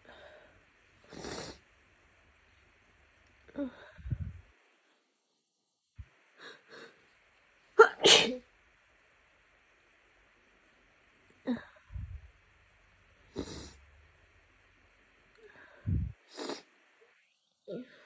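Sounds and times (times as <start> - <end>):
quiet breathy sounds: 0.0 - 1.7, 3.5 - 5.3, 6.0 - 7.3, 11.3 - 12.4, 13.1 - 13.8, 15.3 - 18.0
woman sneezing: 7.8 - 8.4.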